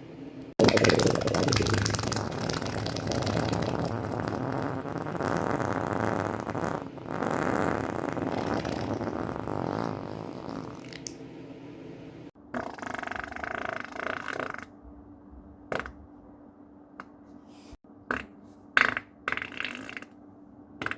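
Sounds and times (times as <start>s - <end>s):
long fart: 0.6s - 11.0s, 12.5s - 14.7s, 18.8s - 20.1s.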